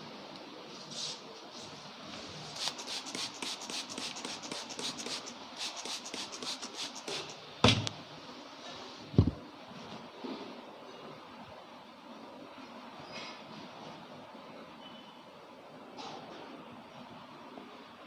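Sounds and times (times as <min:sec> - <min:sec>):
rhythmic hand strokes on head: 0:02.5 - 0:07.4
heavy deep thump: 0:09.2 - 0:09.4.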